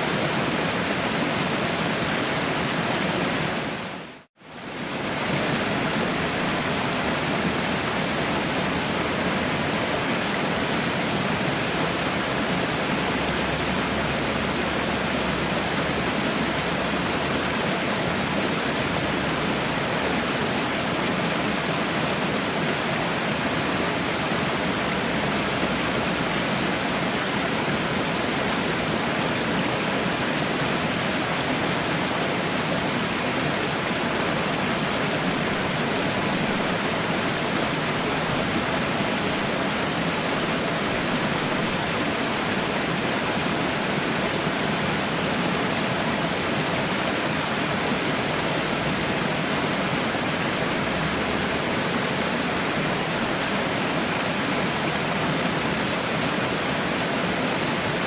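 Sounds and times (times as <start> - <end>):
waterfall roaring: 0.0 - 58.0.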